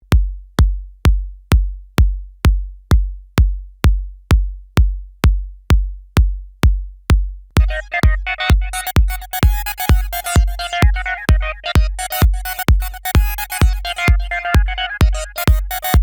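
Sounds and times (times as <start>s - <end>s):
drum-machine kick drum: 0.0s - 16.0s
electronic instruments and percussion: 7.6s - 16.0s.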